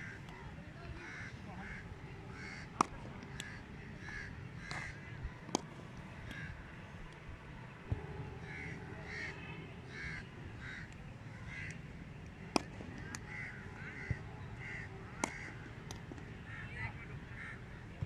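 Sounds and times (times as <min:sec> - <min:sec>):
crows cawing: 0:01.0 - 0:05.0, 0:08.4 - 0:09.3, 0:09.9 - 0:11.8, 0:13.0 - 0:15.6, 0:17.4 - 0:17.6
cricket bat striking ball: 0:02.7 - 0:03.4, 0:12.4 - 0:13.3, 0:15.1 - 0:16.2.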